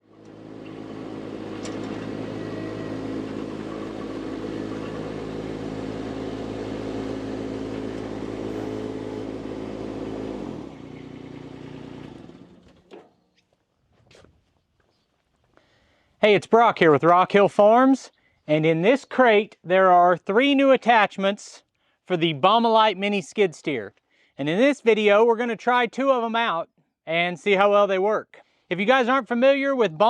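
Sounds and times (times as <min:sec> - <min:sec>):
skid steer engine running: 0:00.0 - 0:13.0.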